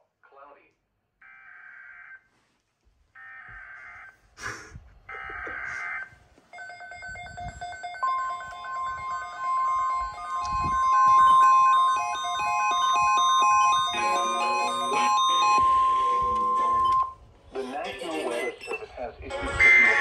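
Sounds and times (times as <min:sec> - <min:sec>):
steady single-pitch alert tone: 0:06.7 - 0:17.2.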